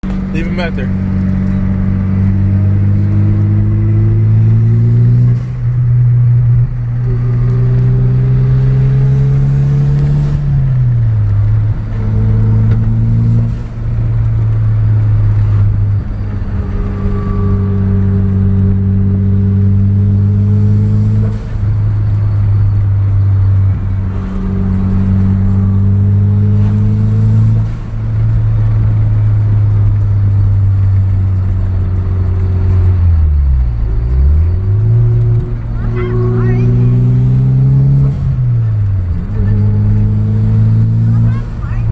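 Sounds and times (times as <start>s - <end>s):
low steady drone: 14.3s - 20.6s.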